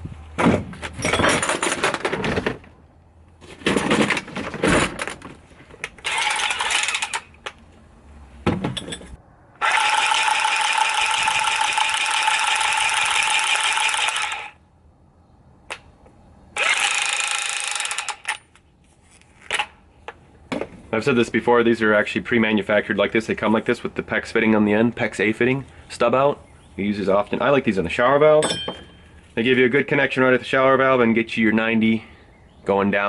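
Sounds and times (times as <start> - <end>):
tubing cutter whirring: 6.0 - 7.4, 9.6 - 14.6, 16.5 - 18.4.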